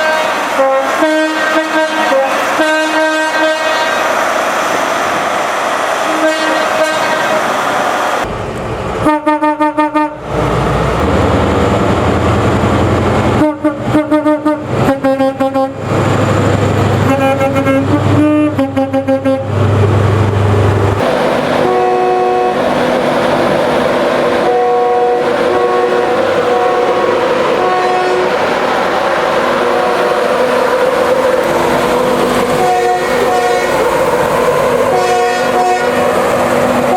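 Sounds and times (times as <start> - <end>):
short train horn blasts: 0.0 - 4.0, 6.1 - 7.4, 9.0 - 10.2, 13.4 - 15.8, 17.1 - 19.5, 21.5 - 22.7, 24.4 - 28.4, 32.5 - 33.9, 34.9 - 36.1
train rumble: 0.0 - 36.9.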